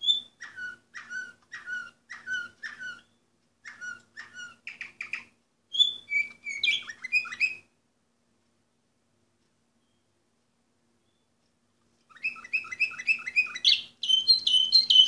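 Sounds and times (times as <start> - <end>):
canary singing: 0.0 - 7.8, 12.1 - 15.0.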